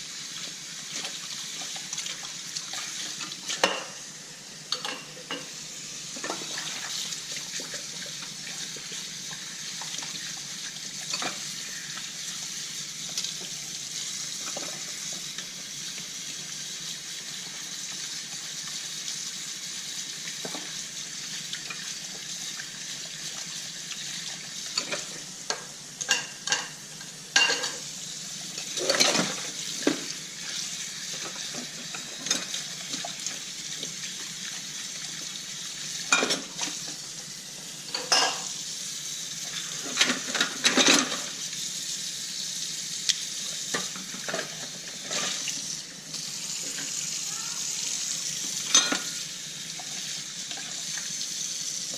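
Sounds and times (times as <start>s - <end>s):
water running from tap: 0.0s - 51.9s
dishes and cutlery clinking: 3.5s - 4.0s, 4.7s - 5.5s, 26.1s - 26.8s, 27.4s - 27.8s, 28.8s - 29.4s, 36.1s - 36.5s, 37.9s - 38.5s, 48.6s - 49.2s.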